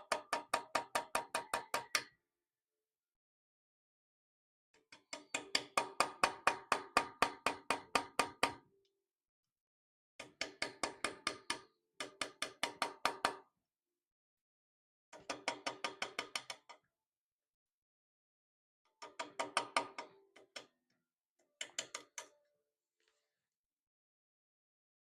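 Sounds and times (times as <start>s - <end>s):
hammer tapping chisel into iron: 5.0s - 8.6s, 10.2s - 13.4s.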